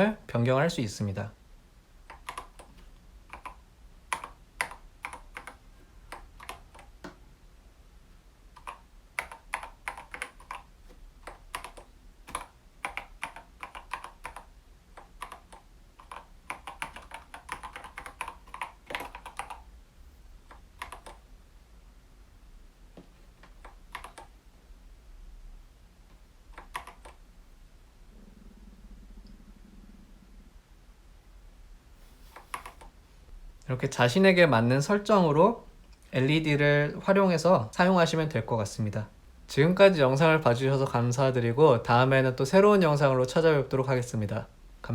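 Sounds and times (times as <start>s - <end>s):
mechanical keyboard key presses: 15.0s - 19.6s.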